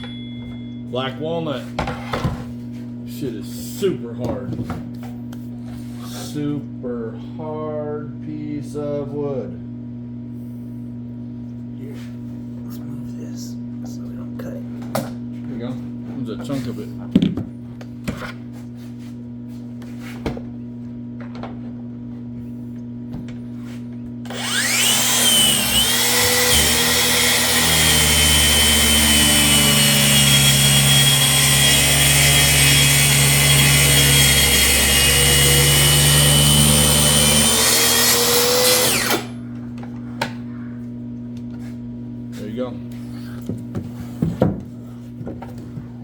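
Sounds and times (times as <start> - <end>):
electric power saw cutting wood: 24.3 - 39.4.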